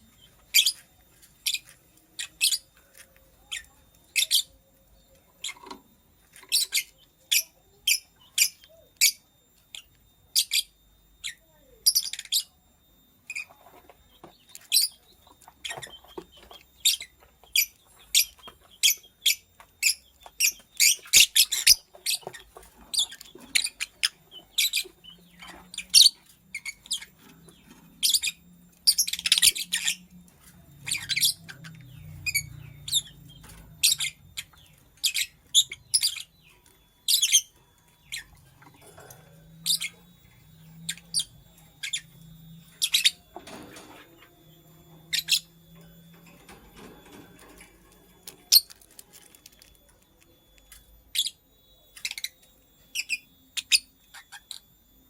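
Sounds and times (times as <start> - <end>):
lovebird chirping: 0.0 - 55.0.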